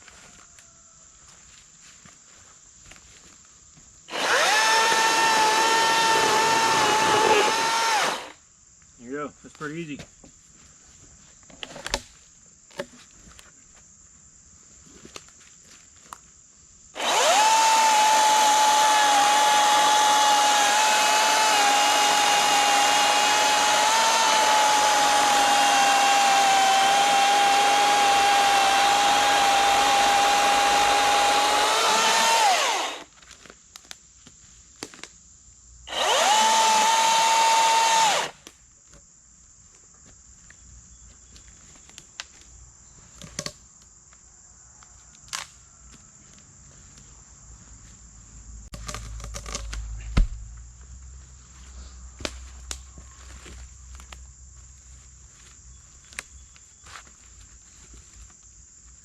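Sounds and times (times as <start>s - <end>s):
battery chainsaw whining: 4.1s - 8.4s, 17.0s - 33.1s, 35.9s - 38.4s.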